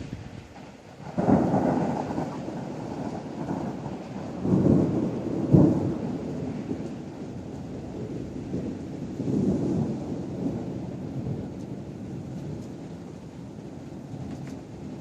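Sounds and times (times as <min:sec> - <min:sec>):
heavy rain: 0:00.0 - 0:15.0
thunder rumbling: 0:00.0 - 0:15.0.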